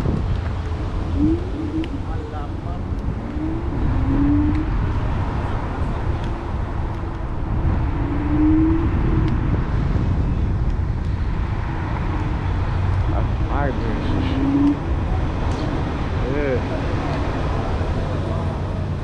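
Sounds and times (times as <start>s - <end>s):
road traffic rumble: 0.0s - 19.0s
rising whine: 1.0s - 9.5s.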